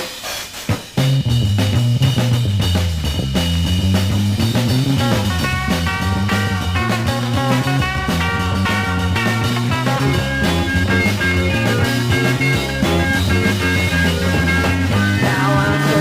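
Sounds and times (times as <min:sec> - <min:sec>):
psychedelic rock band playing: 0:00.0 - 0:16.0.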